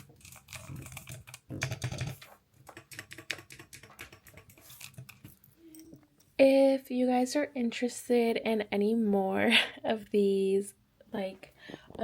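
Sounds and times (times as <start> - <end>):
mechanical keyboard typing: 0.2 - 5.2.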